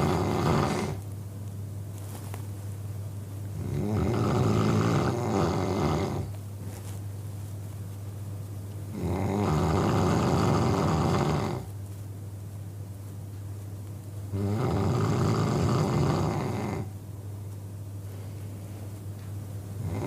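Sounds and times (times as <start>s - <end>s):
man snoring: 0.0s - 1.0s, 3.6s - 6.3s, 8.9s - 11.7s, 14.3s - 16.9s, 19.8s - 20.0s
low steady hum: 0.0s - 20.0s.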